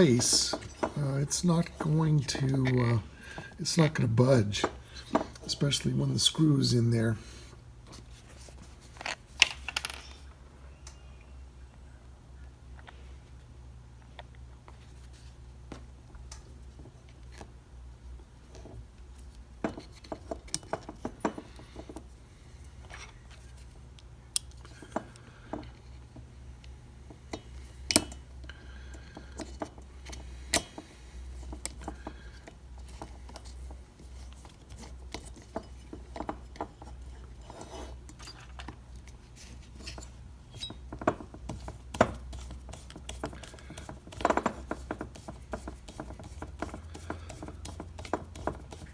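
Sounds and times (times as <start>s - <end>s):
hand tools and metal parts clinking: 0.0s - 4.0s
steady low hum: 0.0s - 48.9s.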